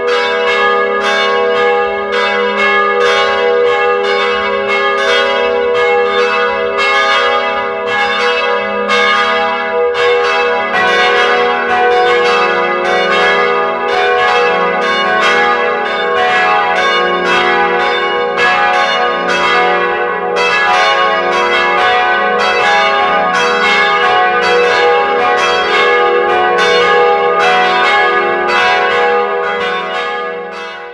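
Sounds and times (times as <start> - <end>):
church bells pealing: 0.0 - 30.9.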